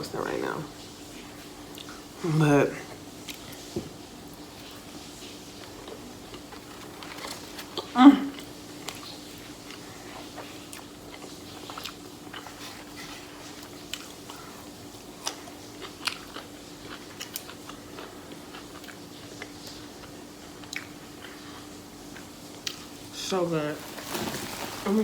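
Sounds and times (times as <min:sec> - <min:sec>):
person chewing: 0:01.2 - 0:02.2, 0:04.3 - 0:23.0.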